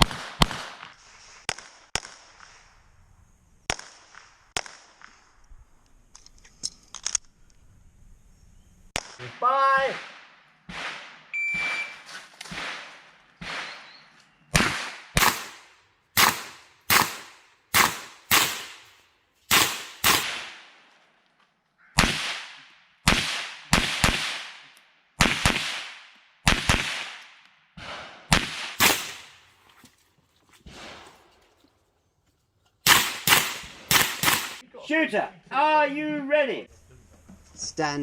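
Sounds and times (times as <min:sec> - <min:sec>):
sharp gunshots with echo: 0:00.0 - 0:00.9, 0:09.0 - 0:20.8, 0:22.0 - 0:27.2, 0:27.8 - 0:29.4, 0:32.8 - 0:34.6
shot timer beep: 0:11.4 - 0:12.0.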